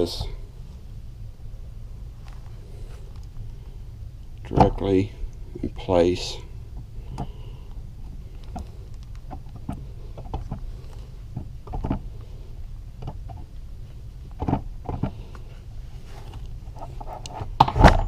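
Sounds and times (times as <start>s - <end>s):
low steady hum: 0.0s - 18.0s
clicks and knocks of engine case: 11.3s - 12.1s, 14.3s - 15.2s.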